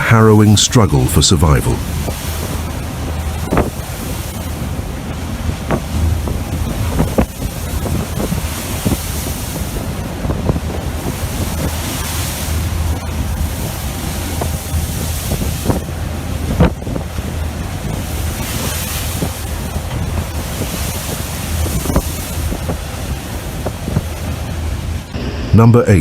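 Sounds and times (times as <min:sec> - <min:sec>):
heavy seas washing: 0:00.0 - 0:26.0
steady low rumble: 0:00.0 - 0:26.0
storm wind on microphone: 0:00.0 - 0:26.0
knocks and splashes: 0:01.7 - 0:25.2.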